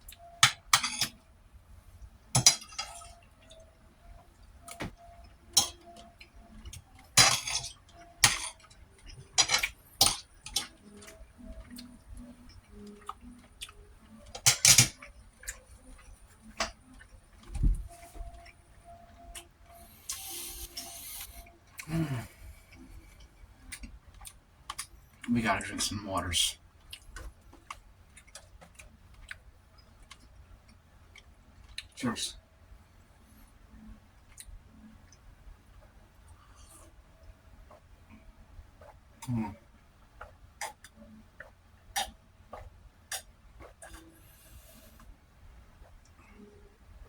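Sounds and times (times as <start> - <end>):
dishes and cutlery clinking: 0.4 - 1.2, 2.4 - 3.2, 4.6 - 12.0, 14.2 - 17.0.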